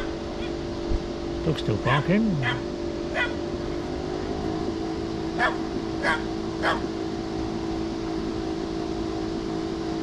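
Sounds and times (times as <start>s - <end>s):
steady hum: 0.0s - 10.0s
dog barking: 1.8s - 3.4s, 5.4s - 6.9s.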